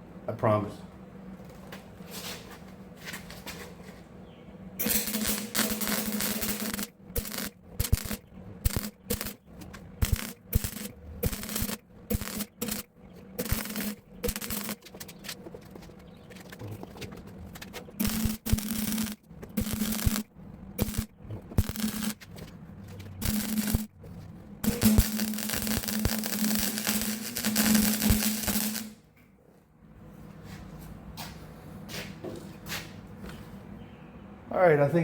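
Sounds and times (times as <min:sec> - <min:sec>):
low hum: 0:04.5 - 0:29.1
welder crackling hiss: 0:04.8 - 0:09.4, 0:10.0 - 0:14.8, 0:18.0 - 0:20.2, 0:20.8 - 0:22.2, 0:23.2 - 0:23.9, 0:24.7 - 0:29.0.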